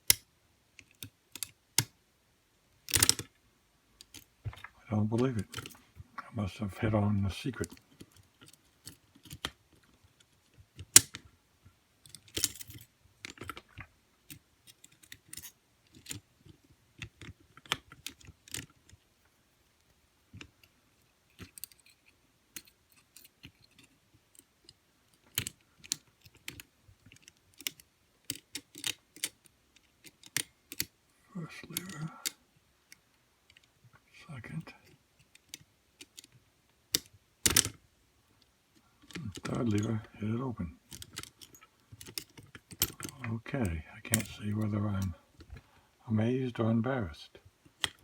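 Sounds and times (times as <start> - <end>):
lock pick clicking in padlock: 2.9 - 3.3, 27.2 - 29.4, 36.9 - 37.8.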